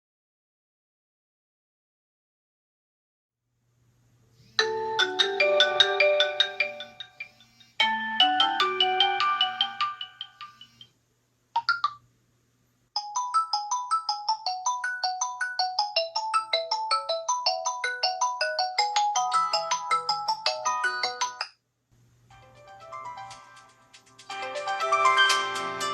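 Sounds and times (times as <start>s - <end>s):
smartphone ringtone melodies: 4.6s - 10.9s, 13.0s - 21.5s, 24.3s - 25.9s.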